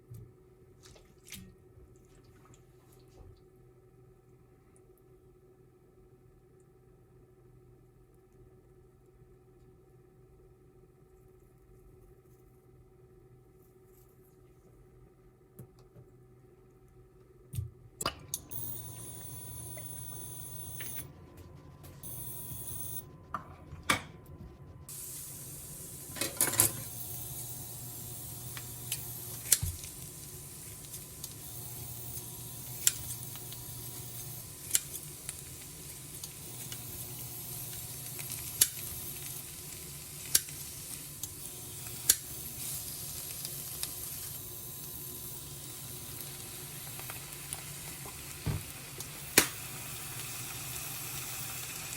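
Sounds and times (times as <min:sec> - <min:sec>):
food sizzling in frying pan: 0:18.5 - 0:23.1, 0:24.9 - 0:51.9.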